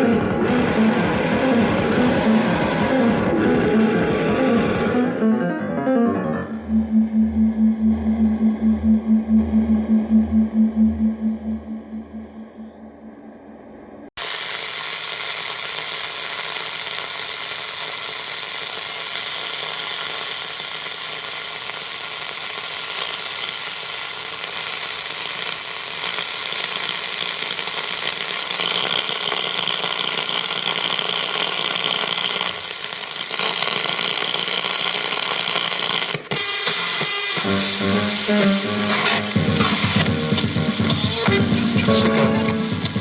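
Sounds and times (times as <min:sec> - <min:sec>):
harsh noise music: 0:00.0 - 0:12.8, 0:37.4 - 0:43.0.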